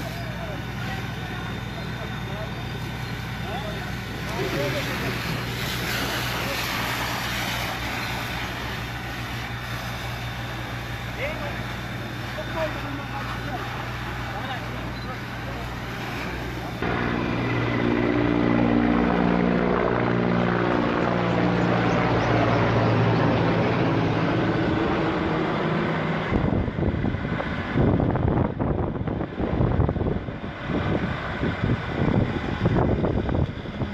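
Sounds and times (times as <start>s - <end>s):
aircraft engine droning: 0.0s - 33.9s
gusty rushing noise: 22.8s - 33.9s.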